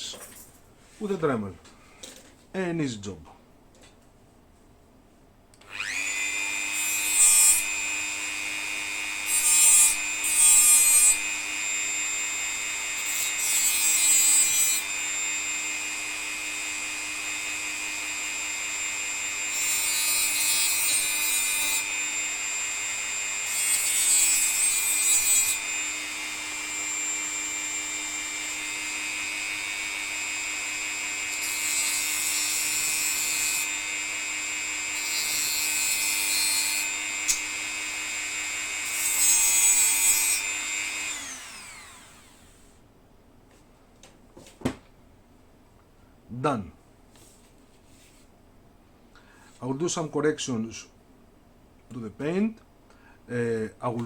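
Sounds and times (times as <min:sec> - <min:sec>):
rotary tool grinding nails: 0:05.6 - 0:42.6
rotary tool whining: 0:05.6 - 0:42.7.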